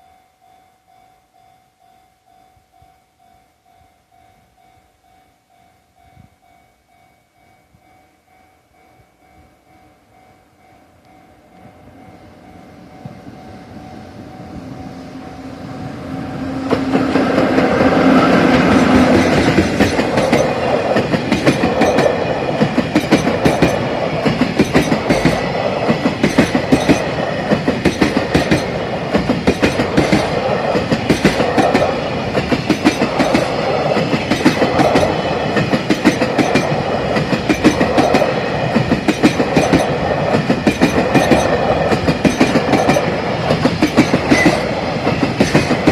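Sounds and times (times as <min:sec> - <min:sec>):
freight train passing: 0:06.1 - 0:45.9
wheels clacking over rail joints: 0:16.4 - 0:45.9.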